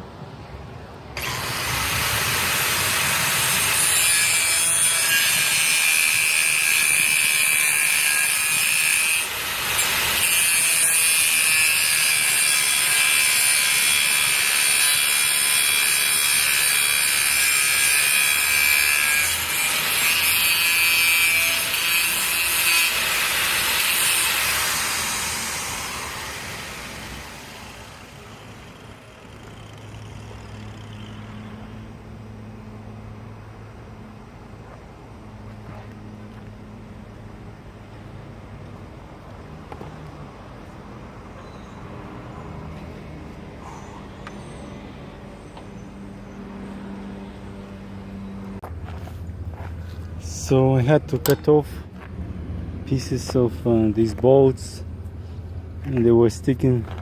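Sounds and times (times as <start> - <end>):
angle grinder cutting metal: 1.2 - 31.4.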